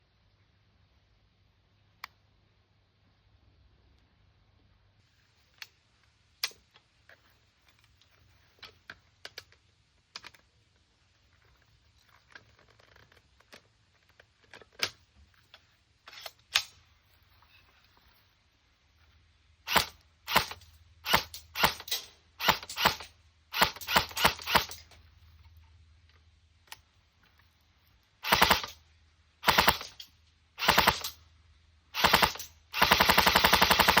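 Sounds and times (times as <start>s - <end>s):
airsoft gun full-auto bursts: 19.7s - 24.8s, 28.2s - 28.8s, 29.4s - 31.2s, 31.9s - 34.0s.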